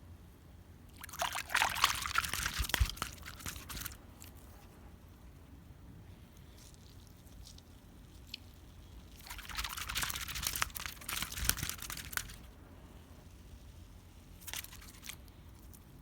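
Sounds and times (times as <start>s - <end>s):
toy wet squelching: 0.9s - 4.4s, 6.5s - 12.5s, 14.4s - 15.3s.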